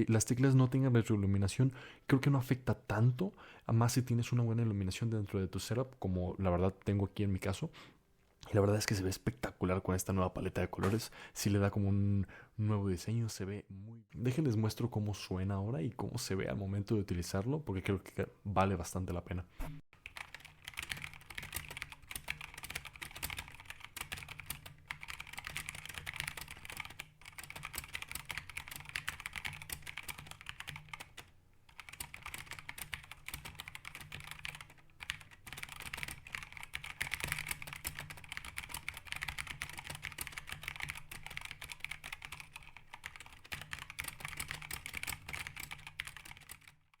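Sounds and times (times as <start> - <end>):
mechanical keyboard typing: 20.0 - 46.8.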